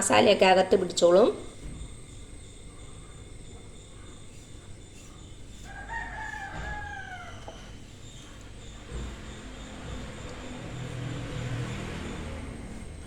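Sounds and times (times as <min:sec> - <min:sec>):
rooster crowing: 0:04.3 - 0:13.0.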